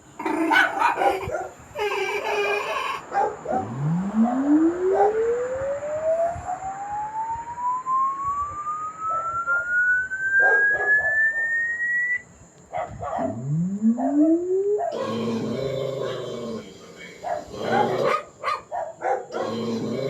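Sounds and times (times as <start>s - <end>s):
rising electronic test tone: 3.5s - 12.3s, 13.2s - 15.0s.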